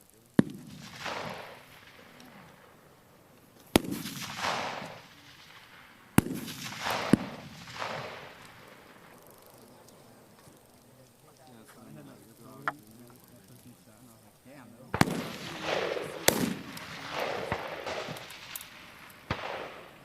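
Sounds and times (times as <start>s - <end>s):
rifle shots with echo: 0.0s - 10.8s, 14.9s - 20.0s.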